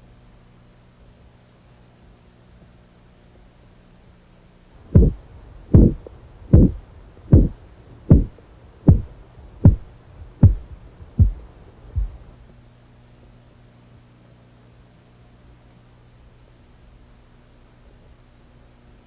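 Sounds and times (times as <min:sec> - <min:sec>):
pulse thumps through stethoscope: 0:04.9 - 0:11.4, 0:12.0 - 0:12.2.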